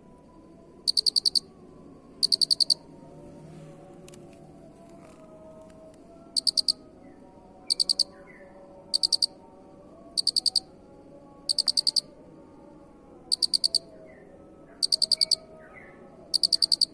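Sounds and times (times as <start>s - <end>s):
cricket chirping: 0.0s - 3.3s, 6.3s - 14.0s, 14.7s - 15.6s, 16.2s - 16.9s.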